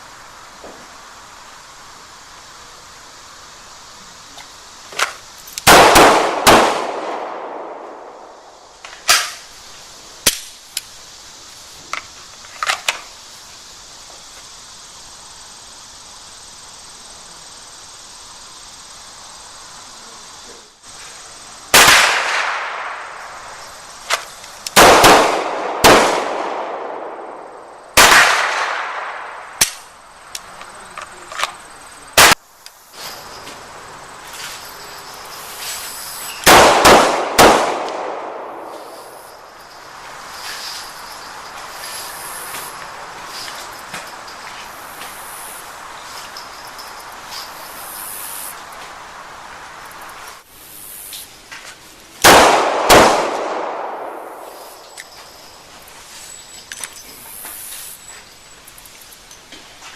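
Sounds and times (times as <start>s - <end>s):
loud pistol shots with echo: 5.7s - 8.2s, 21.7s - 23.0s, 24.8s - 27.4s, 28.0s - 29.4s, 36.4s - 39.1s, 52.2s - 54.5s
faint sharp gunshot cracks: 52.2s - 54.4s.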